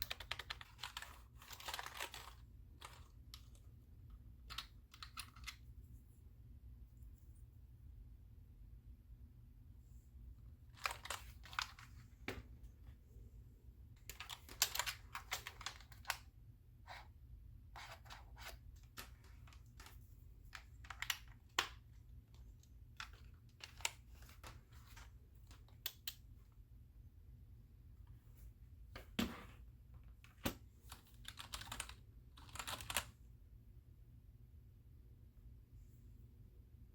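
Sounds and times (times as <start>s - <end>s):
keyboard keys clicking: 31.2s - 33.0s.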